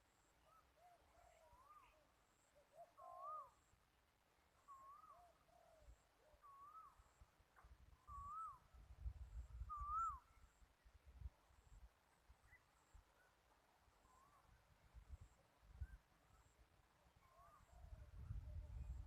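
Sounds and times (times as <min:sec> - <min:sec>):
bird calling faintly: 0:00.0 - 0:19.0
low rumble of wind: 0:07.2 - 0:19.0.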